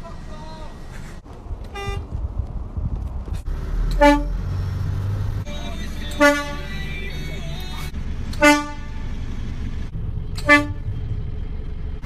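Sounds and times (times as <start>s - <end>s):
low road rumble: 0.0s - 12.0s
vehicle horn blasts: 1.7s - 2.1s, 3.9s - 4.4s, 6.0s - 6.8s, 8.4s - 9.0s, 10.4s - 10.9s.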